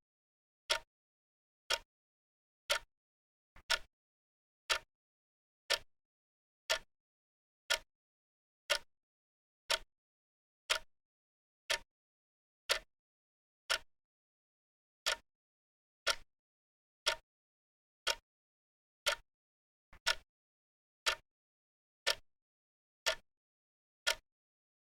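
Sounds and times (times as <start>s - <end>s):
timer ticking: 20.0s - 20.2s.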